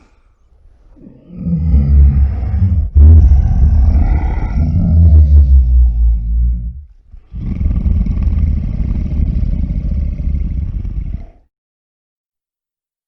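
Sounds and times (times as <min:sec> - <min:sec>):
deep rough rumbling: 0:01.4 - 0:11.2.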